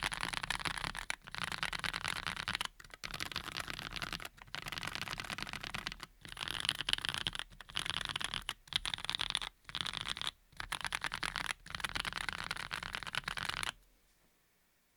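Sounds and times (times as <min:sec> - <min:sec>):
fast mechanical keyboard typing: 0:00.0 - 0:13.8.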